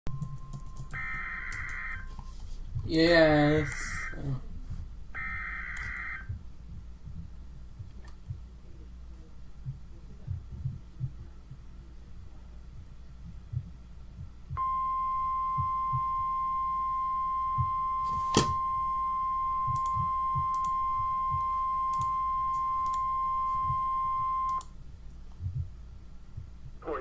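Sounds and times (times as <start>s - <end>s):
steady warning alarm tone: 0.1s - 2.2s, 3.4s - 4.4s, 5.2s - 6.4s, 14.6s - 24.6s
faint low thumps: 4.4s - 16.6s, 17.2s - 27.0s.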